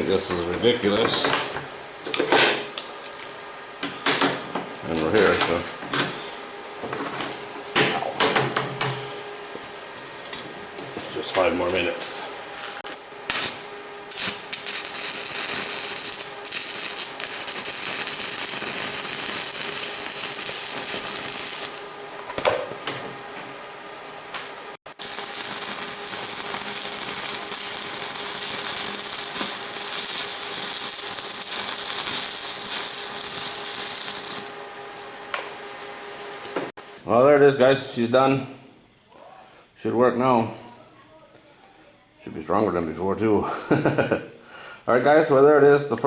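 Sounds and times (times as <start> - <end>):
arc welding crackling hiss: 11.0 - 22.2, 24.4 - 34.7.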